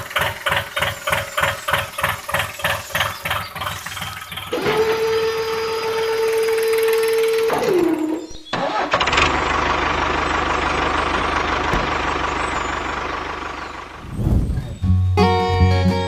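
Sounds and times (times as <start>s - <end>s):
engine starting and running: 0.0s - 15.4s
whine dropping in pitch: 14.0s - 15.0s.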